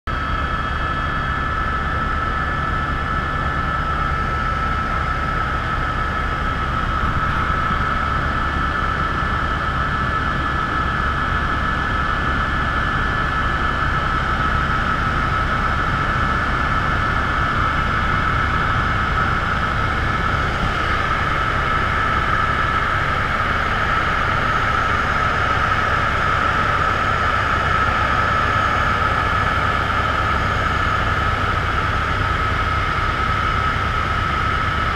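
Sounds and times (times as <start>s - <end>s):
helicopter rotor beat: 0.1s - 34.9s
turbine whine: 0.1s - 34.9s.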